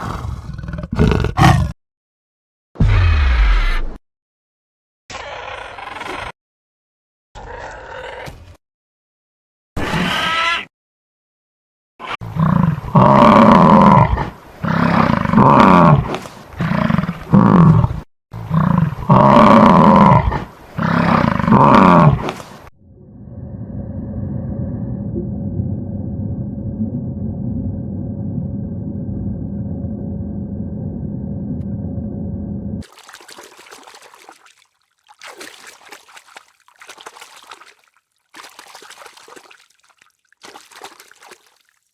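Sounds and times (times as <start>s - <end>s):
large animal roaring: 0.0s - 1.8s
water trickling and splashing: 32.8s - 41.9s.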